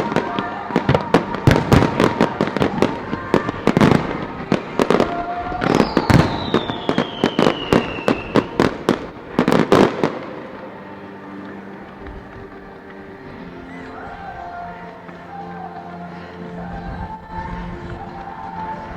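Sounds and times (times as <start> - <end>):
firework bangs: 0.0 - 11.1
firework whistle falling in pitch: 5.4 - 8.7.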